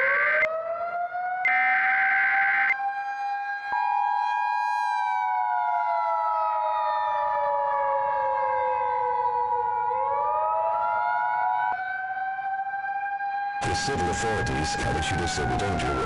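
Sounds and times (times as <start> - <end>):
siren wailing: 0.0 - 16.0.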